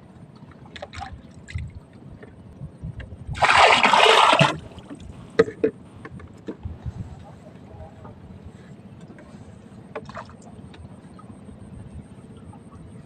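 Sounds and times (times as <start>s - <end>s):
water splashing loudly: 3.4s - 4.8s.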